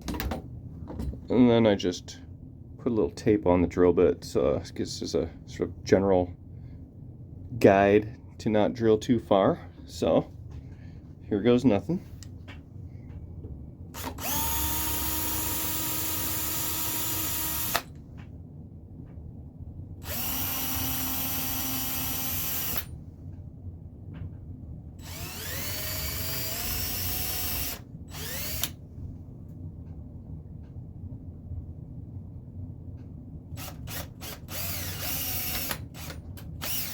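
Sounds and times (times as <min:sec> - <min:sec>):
cordless drill boring into wood: 0:14.0 - 0:17.9, 0:20.0 - 0:22.9, 0:25.0 - 0:28.8, 0:33.6 - 0:36.9.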